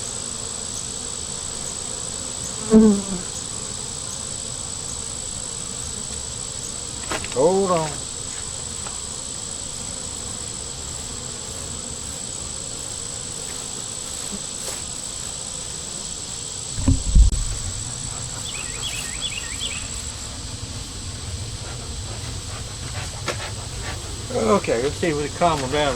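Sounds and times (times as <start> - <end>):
bees buzzing: 0.0 - 25.9
loud low thump: 16.8 - 19.3.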